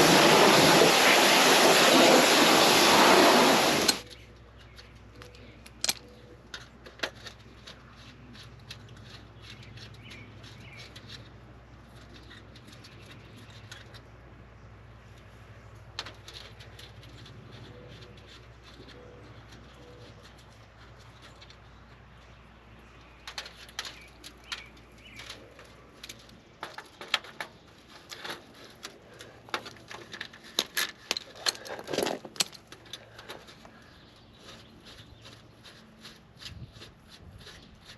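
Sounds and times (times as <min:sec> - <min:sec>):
pressure washer spraying: 0:00.0 - 0:04.0.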